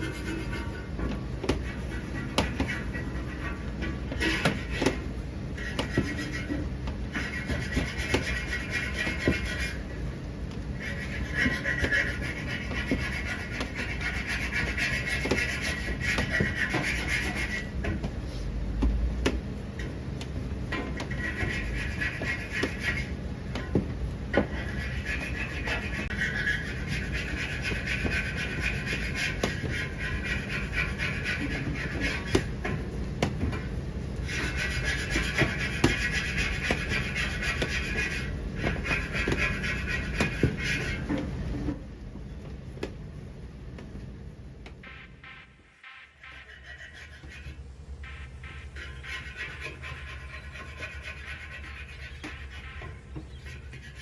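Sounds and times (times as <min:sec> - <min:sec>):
rolling pin rubbing on board: 0:00.0 - 0:09.9, 0:10.8 - 0:18.4, 0:20.7 - 0:23.7, 0:24.3 - 0:33.4, 0:34.2 - 0:41.5, 0:44.8 - 0:54.0.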